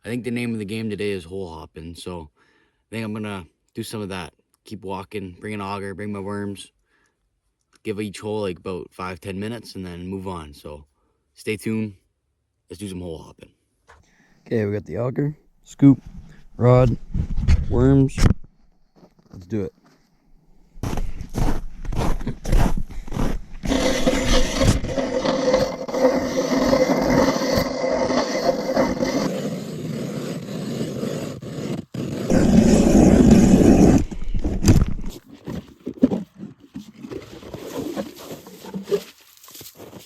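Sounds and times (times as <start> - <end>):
footsteps crunching in snow: 20.8 - 30.0, 38.9 - 40.0
ice auger cutting through ice: 20.8 - 35.2, 37.0 - 40.0.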